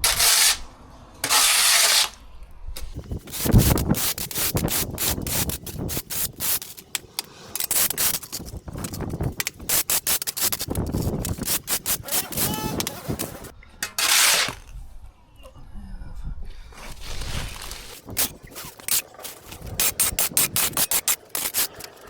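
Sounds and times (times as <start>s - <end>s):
pressure washer spraying paving: 3.2s - 8.5s, 9.6s - 13.5s.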